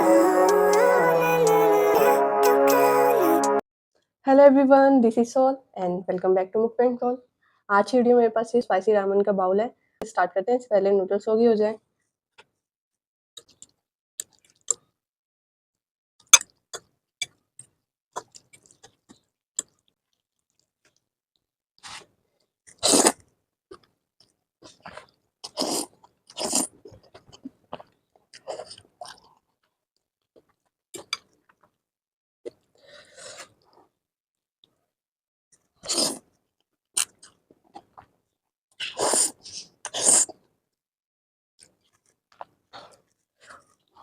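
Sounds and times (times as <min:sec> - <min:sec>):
slurping noodles: 0:22.7 - 0:23.2, 0:24.6 - 0:27.2, 0:35.8 - 0:36.3, 0:38.8 - 0:40.4.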